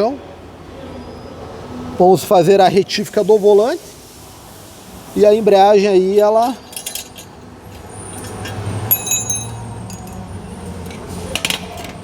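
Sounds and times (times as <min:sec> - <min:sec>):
metal parts clinking: 0:06.2 - 0:10.3.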